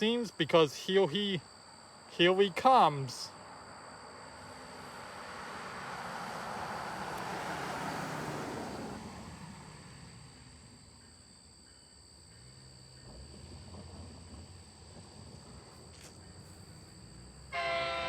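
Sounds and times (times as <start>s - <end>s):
crickets chirping: 0.0s - 18.0s
vehicle passing by: 4.4s - 10.7s.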